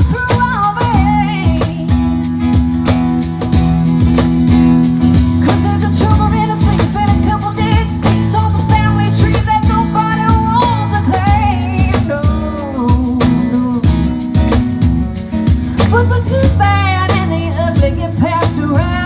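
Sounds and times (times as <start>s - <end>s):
person singing lead vocal: 0.0s - 2.4s, 5.4s - 14.2s, 15.8s - 19.0s
live band playing: 0.0s - 19.0s.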